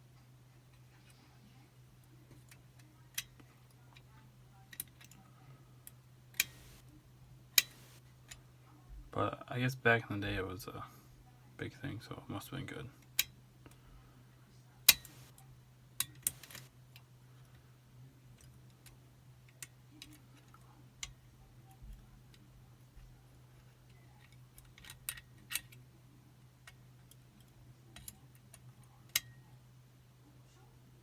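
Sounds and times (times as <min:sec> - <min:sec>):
lock picking metallic clicks: 0:06.4 - 0:06.8, 0:07.6 - 0:08.0, 0:14.9 - 0:15.3, 0:16.3 - 0:16.7.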